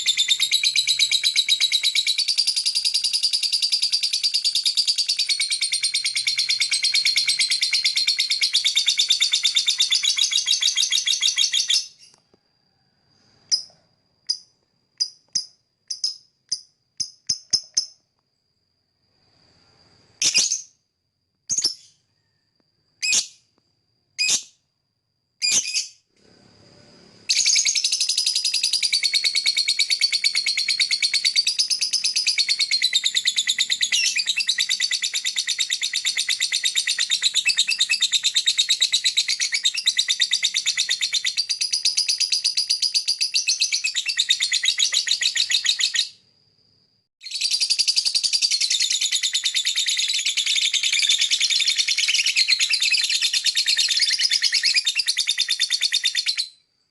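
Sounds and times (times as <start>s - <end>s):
rapid bird chattering song: 0.0s - 12.1s, 27.3s - 46.1s, 47.2s - 56.5s
bird chirping: 0.0s - 12.2s, 13.1s - 18.0s, 20.2s - 20.8s, 21.5s - 23.5s, 24.2s - 24.6s, 25.4s - 26.0s, 27.3s - 46.2s, 47.2s - 56.6s.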